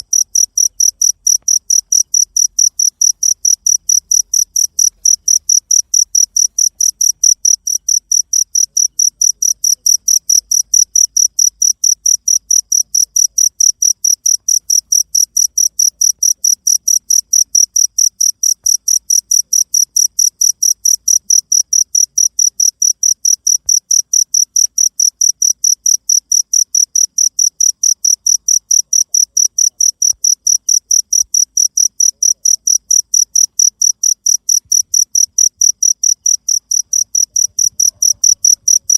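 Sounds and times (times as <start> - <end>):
cricket chirping: 0.0 - 38.9.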